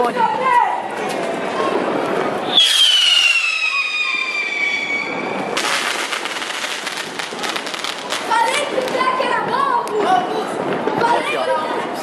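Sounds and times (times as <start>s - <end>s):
firework crackling hiss: 2.4s - 9.4s
firework whistle sliding down: 2.5s - 6.0s.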